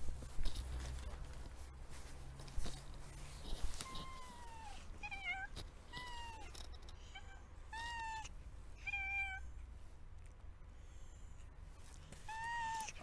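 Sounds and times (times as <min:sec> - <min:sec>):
cat meowing: 0:03.8 - 0:09.5, 0:12.2 - 0:13.0.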